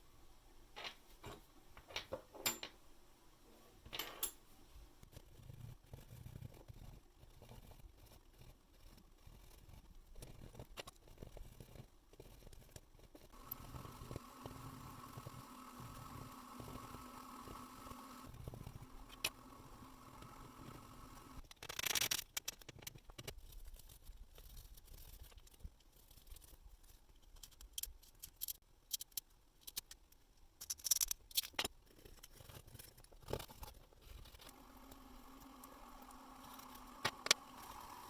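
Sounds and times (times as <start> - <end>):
faint steady hum: 0.0 - 21.4, 33.5 - 38.0.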